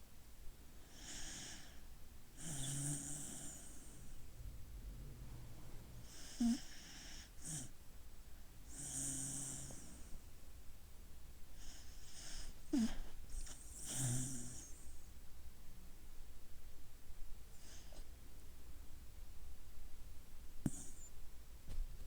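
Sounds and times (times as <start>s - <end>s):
dog snoring: 0.8s - 1.8s, 2.4s - 7.7s, 8.7s - 10.1s, 11.6s - 15.0s, 20.6s - 21.1s.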